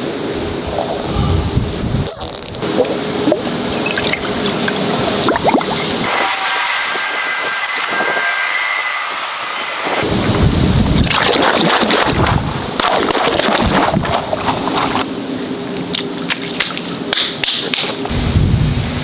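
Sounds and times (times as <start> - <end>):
water rushing and splashing: 2.6 - 15.1.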